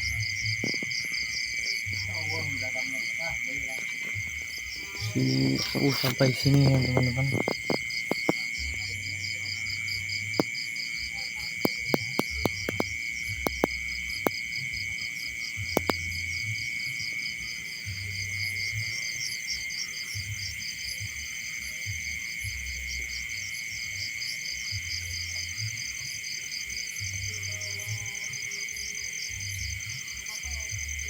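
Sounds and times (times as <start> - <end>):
insects trilling: 0.0 - 31.0
sharp clicks: 4.4 - 8.5, 11.6 - 14.4, 15.8 - 16.0.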